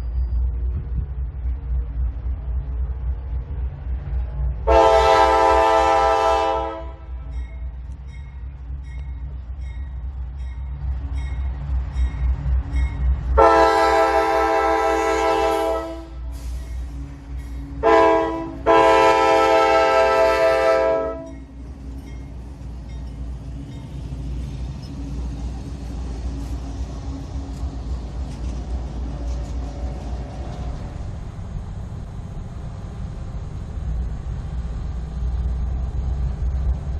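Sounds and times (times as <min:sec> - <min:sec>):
passing train rumble: 0:00.0 - 0:36.9
locomotive air horn blasts: 0:04.7 - 0:07.3, 0:13.4 - 0:16.5, 0:17.8 - 0:21.4.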